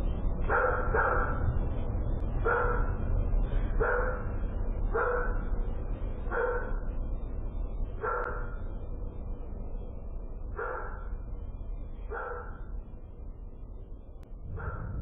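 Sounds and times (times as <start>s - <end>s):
steady low rumble: 0.0s - 15.0s
dog barking: 0.5s - 1.4s, 2.4s - 2.9s, 3.8s - 4.2s, 4.9s - 5.4s, 6.3s - 6.8s, 8.0s - 8.6s, 10.6s - 11.1s, 12.1s - 12.7s, 14.5s - 15.0s.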